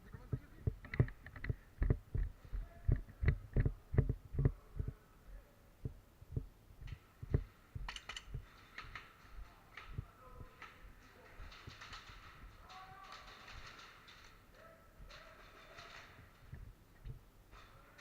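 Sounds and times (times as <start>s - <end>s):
sharp clicks: 6.8s - 17.1s
gear jostling and rattling: 7.3s - 18.0s.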